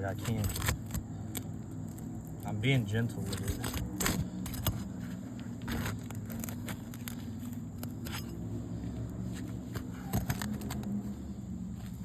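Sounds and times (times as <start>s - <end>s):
roof shingle crackling and tearing: 0.0s - 8.2s
steady low hum: 0.0s - 12.0s.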